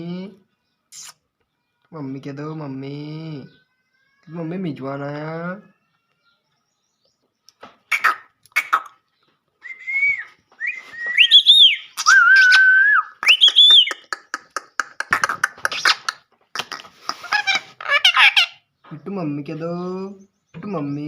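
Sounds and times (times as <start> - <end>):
parrot whistling and chattering: 0.9 - 1.2, 7.9 - 9.0, 9.6 - 18.7.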